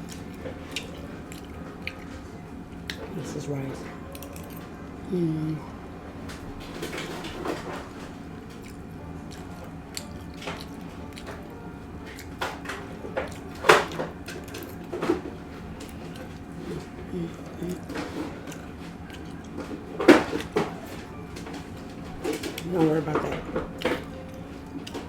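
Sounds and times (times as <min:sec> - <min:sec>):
person humming: 0:05.0 - 0:05.8, 0:16.6 - 0:18.0.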